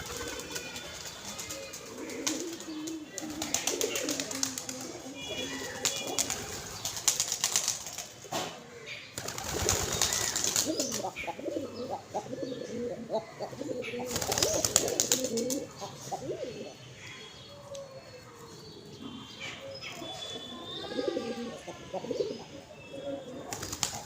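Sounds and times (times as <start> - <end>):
wings flapping and splashing: 0.0 - 1.6, 3.2 - 5.0, 5.6 - 8.1, 9.2 - 11.0, 14.1 - 15.5, 23.5 - 24.0
pigeons cooing: 0.0 - 8.4, 9.2 - 24.0.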